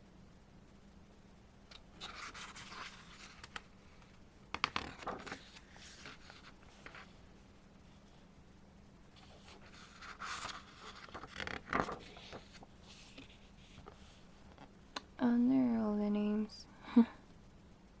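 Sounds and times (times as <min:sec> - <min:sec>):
pages rustling: 0:01.7 - 0:07.2, 0:09.2 - 0:14.7.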